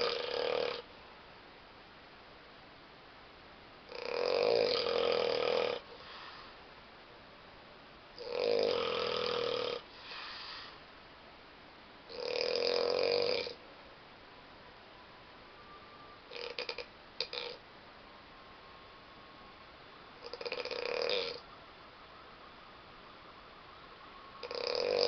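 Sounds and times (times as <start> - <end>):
person snoring loudly: 0.0 - 0.8, 3.9 - 6.3, 8.2 - 10.7, 12.1 - 13.6, 16.3 - 17.6, 20.2 - 21.4, 24.4 - 25.0
soft breath out: 5.9 - 6.7, 9.9 - 10.9.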